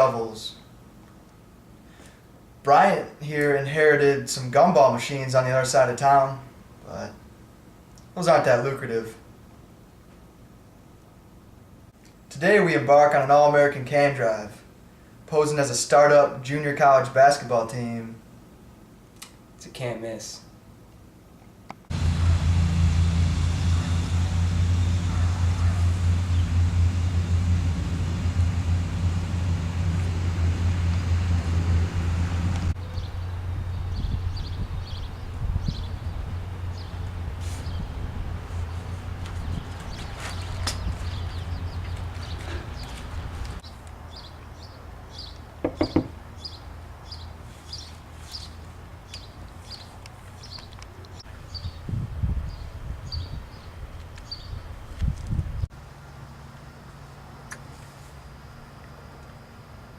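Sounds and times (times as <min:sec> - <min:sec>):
vehicle engine and road noise: 0:21.8 - 0:59.9
quick knocks: 0:45.7 - 0:46.2.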